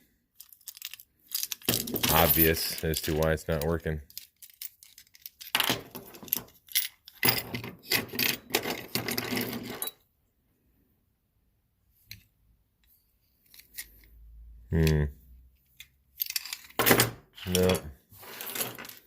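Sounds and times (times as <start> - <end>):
small parts clicking and rattling: 0.3 - 10.0, 12.0 - 14.2, 15.6 - 19.0.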